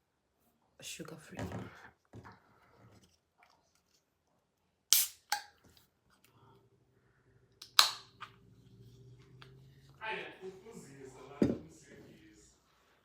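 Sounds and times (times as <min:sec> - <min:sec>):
soda can opening snap and hiss: 0:04.9 - 0:05.6, 0:07.6 - 0:08.2.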